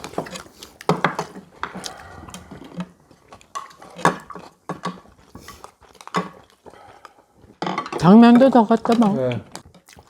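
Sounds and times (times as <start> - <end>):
cutlery clinking on bowls: 3.5 - 6.5, 7.6 - 9.3.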